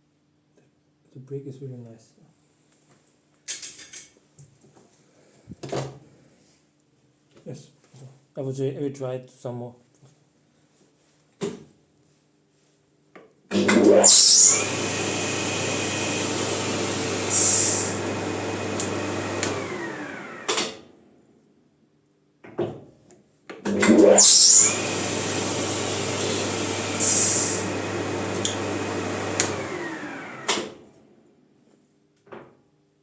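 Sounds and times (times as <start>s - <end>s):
lathe motor spinning and winding down: 13.5s - 20.8s, 23.7s - 30.9s.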